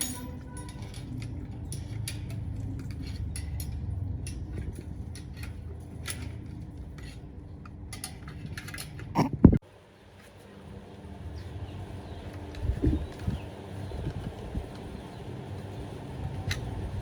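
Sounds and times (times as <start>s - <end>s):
metal parts clicking and clinking: 0.0s - 9.2s
steady low hum: 0.0s - 17.0s.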